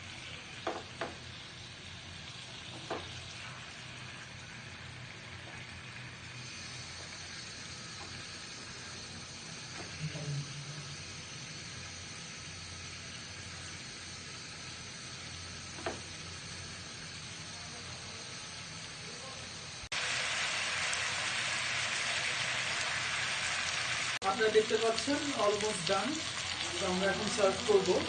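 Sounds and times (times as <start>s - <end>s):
chicken sizzling in a pan: 0.0s - 28.0s.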